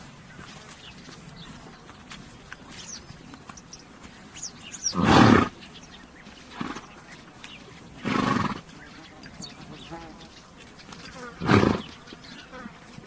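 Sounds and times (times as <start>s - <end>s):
small birds chirping: 0.0s - 13.0s
horse snorting: 4.7s - 5.6s, 6.5s - 7.1s, 7.8s - 8.9s, 11.1s - 12.0s.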